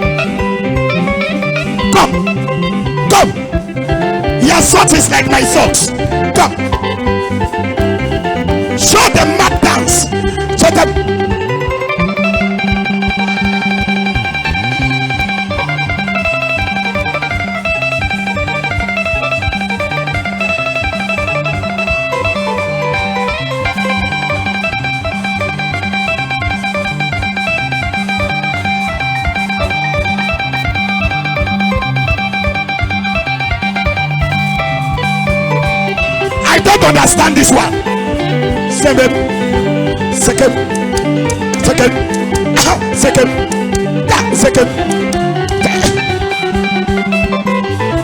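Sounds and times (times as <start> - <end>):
even beat: 0.0 - 48.0
guitar lines: 0.0 - 48.0
instrumental dance music: 0.0 - 48.0
walking bass: 0.0 - 48.0.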